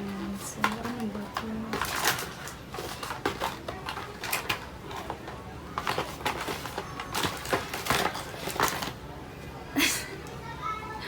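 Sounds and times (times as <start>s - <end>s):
packaging crinkling and rustling: 0.2s - 9.0s.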